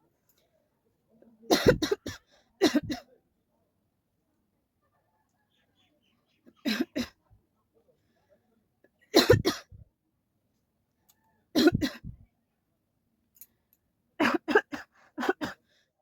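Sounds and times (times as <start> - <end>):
woman coughing: 1.5 - 3.1, 6.6 - 7.2, 9.2 - 9.8, 11.6 - 12.2, 14.2 - 15.6.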